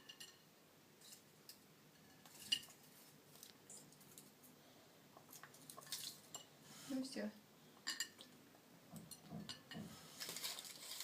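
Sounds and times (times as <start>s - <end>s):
wrapper crinkling: 10.2s - 11.0s.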